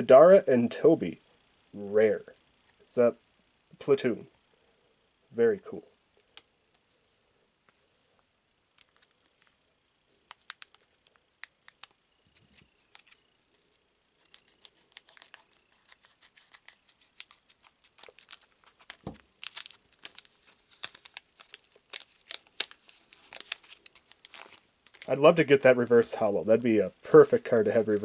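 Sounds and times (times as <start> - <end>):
foil pack crinkling: 8.7 - 25.6.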